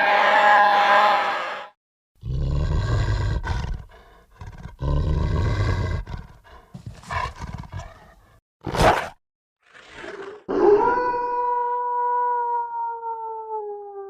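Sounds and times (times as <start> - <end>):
creature growl-roars: 2.2 - 8.9, 9.6 - 11.6
creature snarls: 2.2 - 11.0.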